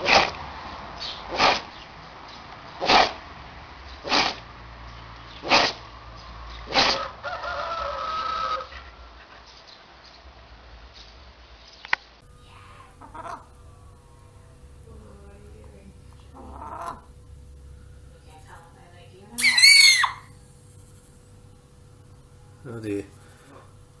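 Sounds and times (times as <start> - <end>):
animal sneezing: 1.3 - 1.7, 2.8 - 3.1, 4.0 - 4.4, 5.4 - 5.8, 6.7 - 7.0, 19.4 - 20.2
drawn-out pitched sound: 19.4 - 21.1.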